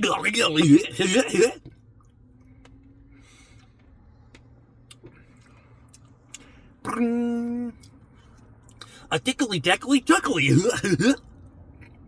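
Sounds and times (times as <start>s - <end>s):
loud steady hum: 0.0s - 1.6s.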